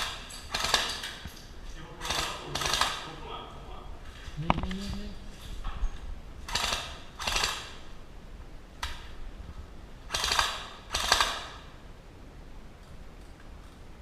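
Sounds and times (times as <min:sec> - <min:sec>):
airsoft rifle bursts: 0:02.0 - 0:03.0, 0:06.5 - 0:07.8, 0:10.1 - 0:11.6.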